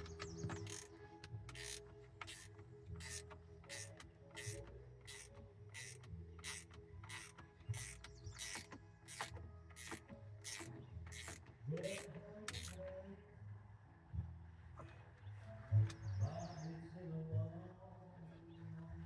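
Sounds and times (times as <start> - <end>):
ratcheting hand tool: 0.0 - 13.0
faint background music: 0.0 - 19.0.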